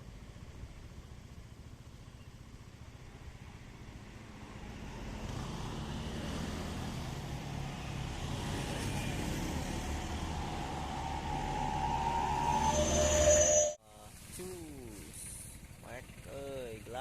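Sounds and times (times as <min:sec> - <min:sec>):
vehicle passing: 0:03.3 - 0:13.8.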